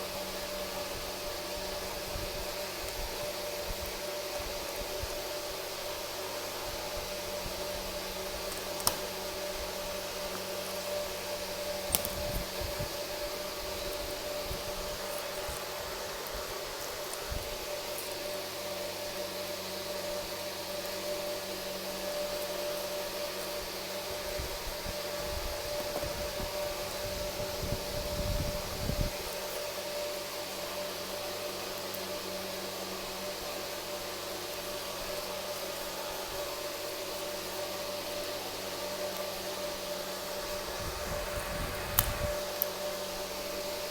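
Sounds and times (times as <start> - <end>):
background hiss: 0.0 - 43.9
constant hum tone: 0.0 - 43.9
faint hum: 32.5 - 43.9.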